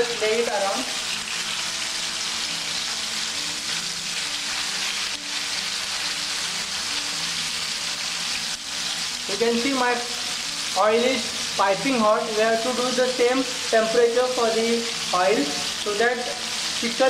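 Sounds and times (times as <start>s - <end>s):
chicken sizzling in hot oil: 0.0s - 17.0s.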